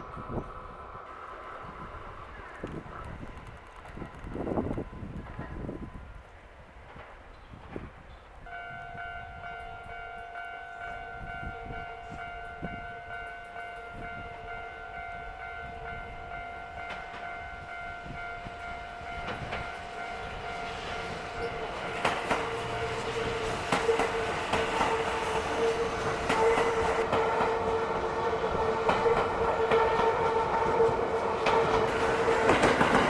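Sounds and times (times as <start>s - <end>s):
train approaching: 0.0s - 33.0s
level crossing warning bell: 8.5s - 33.0s.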